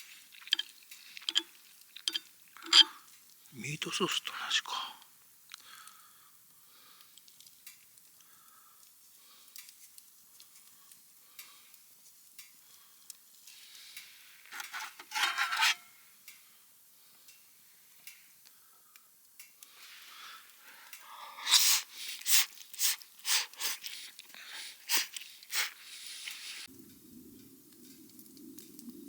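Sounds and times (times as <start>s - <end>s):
utensil stirring and clinking in pan: 0.0s - 3.0s, 14.5s - 15.8s
utensil scraping pan: 1.3s - 1.5s, 2.1s - 3.0s, 14.5s - 15.9s.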